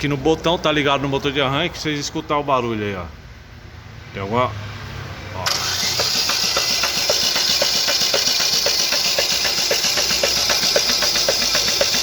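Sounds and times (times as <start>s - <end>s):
car engine knocking: 5.6s - 12.0s.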